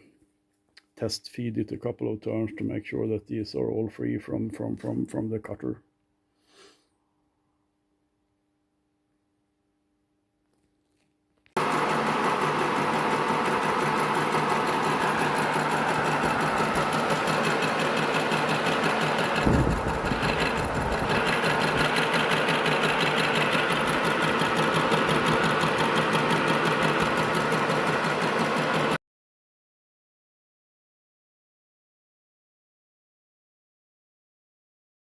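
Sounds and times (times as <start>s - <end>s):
milling machine cutting metal: 11.6s - 29.0s
low thump: 19.4s - 21.0s.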